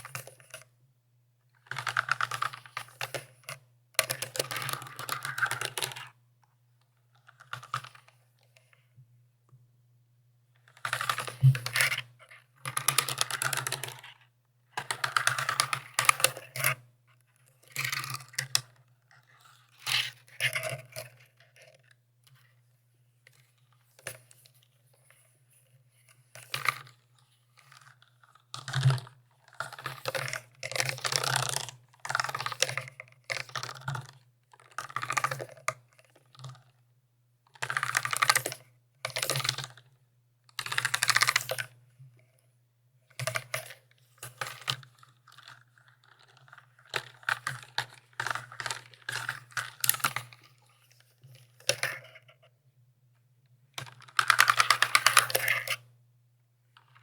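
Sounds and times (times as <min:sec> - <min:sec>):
mechanical keyboard typing: 0:54.1 - 0:55.8.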